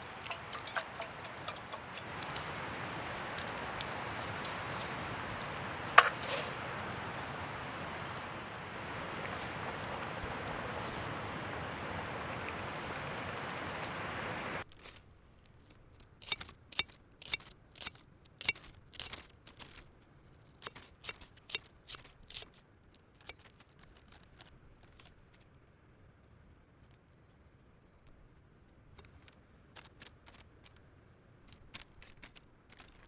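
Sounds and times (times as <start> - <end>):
steady rushing noise: 1.7 - 14.6
sharp clicks and snips: 16.0 - 19.9, 20.6 - 25.5, 28.9 - 33.0.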